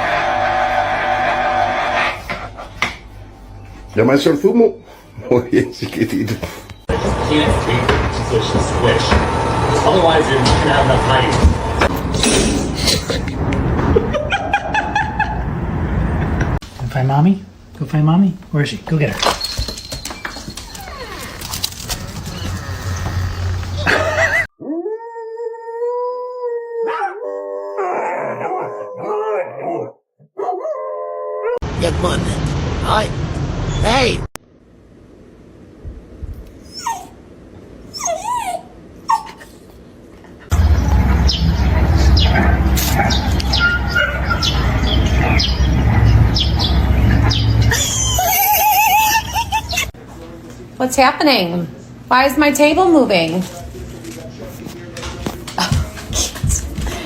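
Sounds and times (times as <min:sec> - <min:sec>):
dog howling: 0:20.6 - 0:31.6, 0:37.9 - 0:39.4
low rumble: 0:40.5 - 0:47.7.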